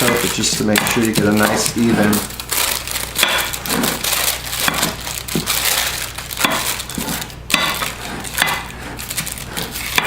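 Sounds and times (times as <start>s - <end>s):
parchment paper crinkling: 0.0s - 10.0s.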